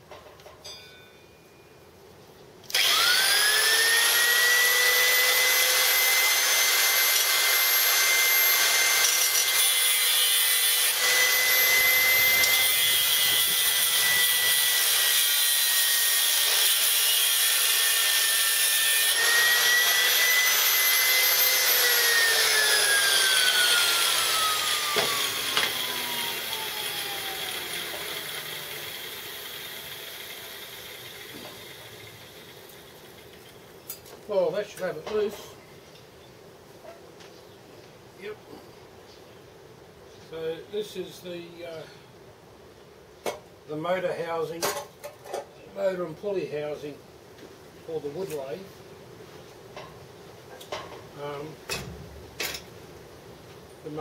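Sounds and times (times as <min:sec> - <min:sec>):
grinder winding down whine: 0:02.7 - 0:15.0, 0:17.4 - 0:33.4
angle grinder grinding metal: 0:02.7 - 0:33.5.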